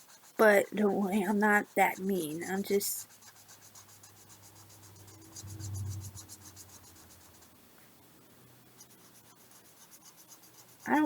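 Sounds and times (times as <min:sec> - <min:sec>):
pen scratching on paper: 0:00.0 - 0:11.0
low hum: 0:04.0 - 0:08.9.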